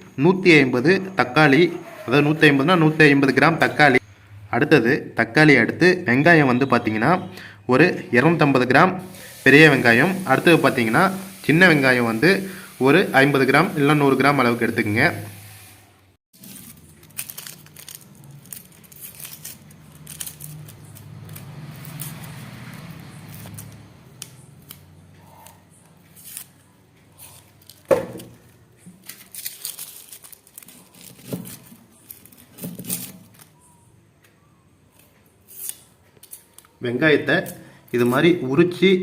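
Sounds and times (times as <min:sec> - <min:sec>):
papery onion skins tearing: 0:16.4 - 0:33.6, 0:35.4 - 0:36.8.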